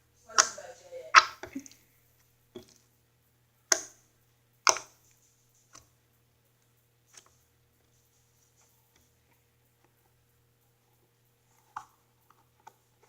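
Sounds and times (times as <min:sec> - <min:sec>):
slime popping when squeezed: 0:00.4 - 0:01.8.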